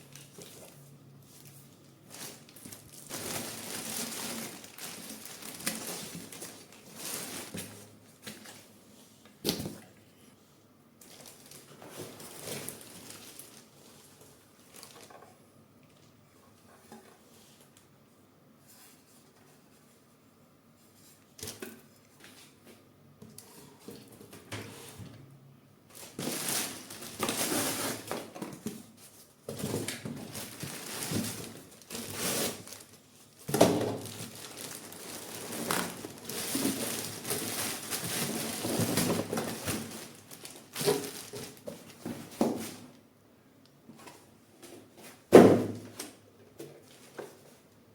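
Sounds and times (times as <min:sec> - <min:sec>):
packaging crinkling and tearing: 0:01.4 - 0:07.6, 0:11.0 - 0:13.7, 0:25.9 - 0:28.4, 0:29.6 - 0:42.0.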